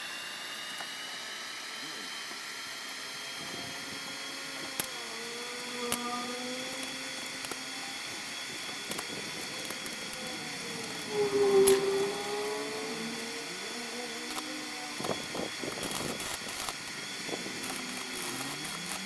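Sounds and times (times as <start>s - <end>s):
electric motor humming: 0.0s - 19.0s
sharp clicks: 4.6s - 19.0s.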